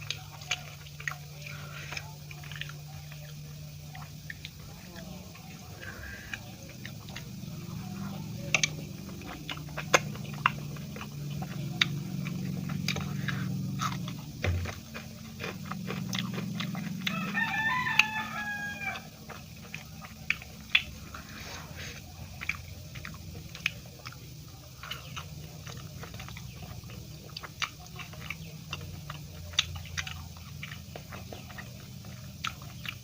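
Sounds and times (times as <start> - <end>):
chewing with mouth clicks: 0.0 - 33.0
rooster crowing: 16.6 - 19.5.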